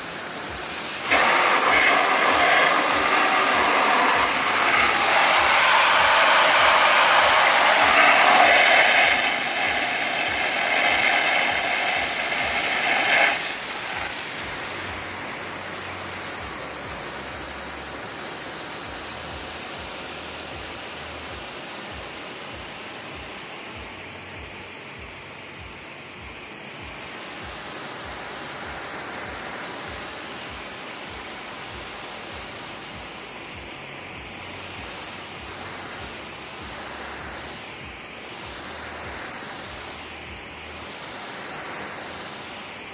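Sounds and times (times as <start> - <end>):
water spraying onto grass: 0.0 - 19.5.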